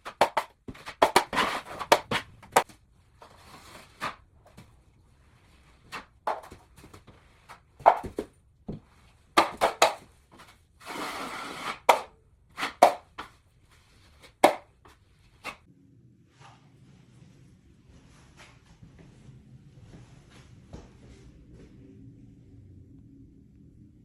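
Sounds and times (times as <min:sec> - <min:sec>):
scrape on drywall: 0:00.8 - 0:02.3, 0:03.2 - 0:04.2, 0:10.4 - 0:14.4.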